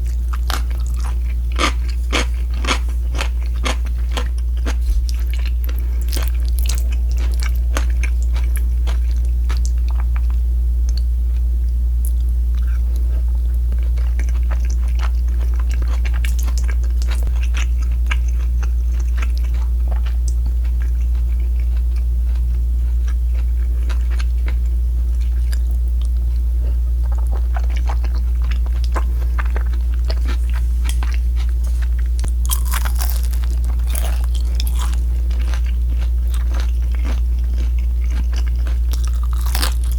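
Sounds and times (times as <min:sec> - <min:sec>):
crunching and chewing crispy food: 0:00.0 - 0:39.9
steady low hum: 0:00.0 - 0:39.9.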